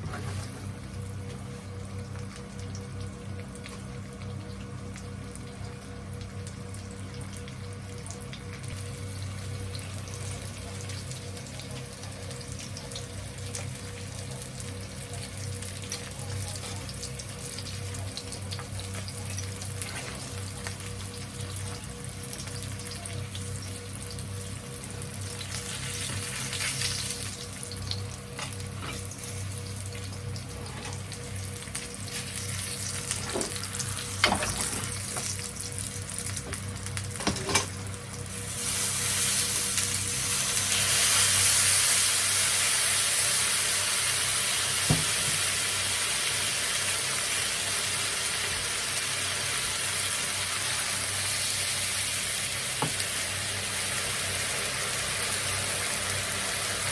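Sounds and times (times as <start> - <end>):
food sizzling in a pan: 0.0 - 56.9.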